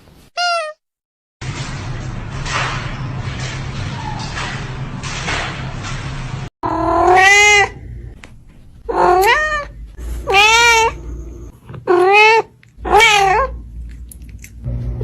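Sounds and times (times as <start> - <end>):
cat meowing: 6.6 - 7.8, 8.9 - 11.2, 11.9 - 13.6.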